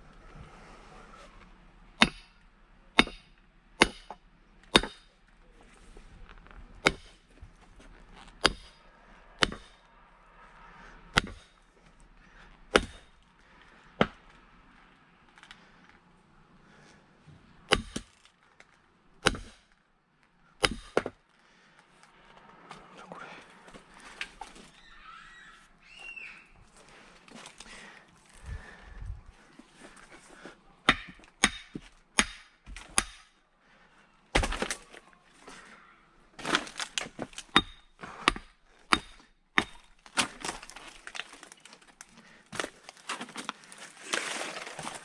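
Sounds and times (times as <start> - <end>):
firewood being split: 3.0 - 9.8, 11.1 - 14.5, 17.6 - 19.8, 20.6 - 21.6, 34.3 - 35.7, 36.4 - 45.0.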